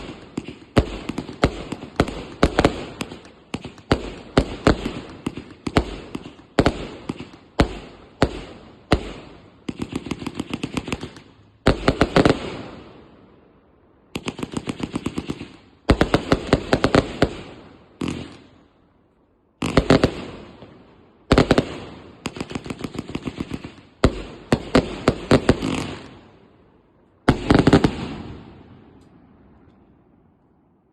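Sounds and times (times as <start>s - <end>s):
fireworks banging: 0.0s - 12.8s, 27.2s - 29.8s.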